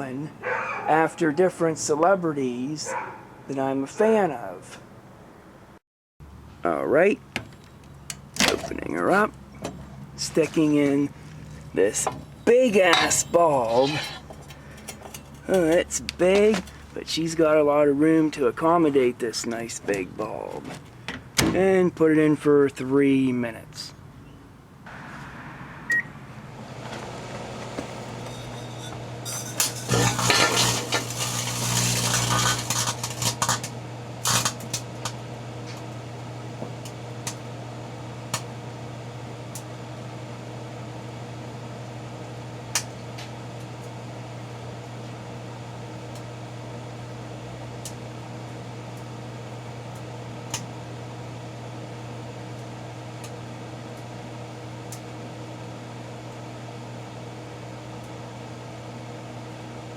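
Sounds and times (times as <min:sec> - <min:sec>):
microwave oven humming: 0:25.9 - 0:59.9
bulb crackling and clinking: 0:28.2 - 0:35.2.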